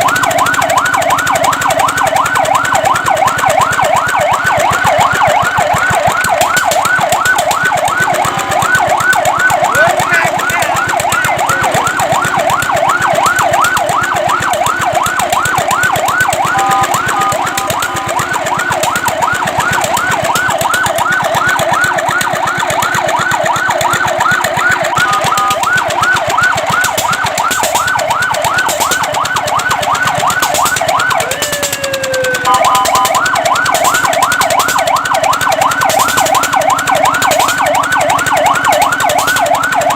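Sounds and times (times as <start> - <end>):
fire truck siren yelp: 0.0 - 39.9.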